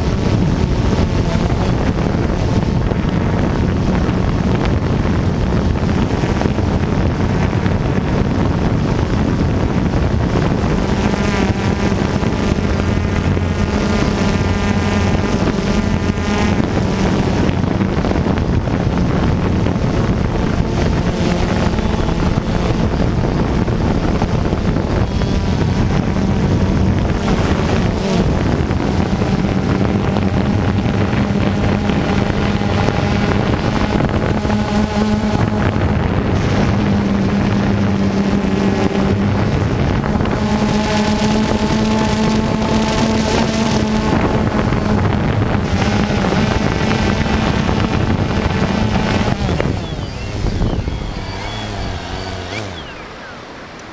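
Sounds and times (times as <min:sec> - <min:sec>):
waterfall roaring: 0:49.5 - 0:53.9.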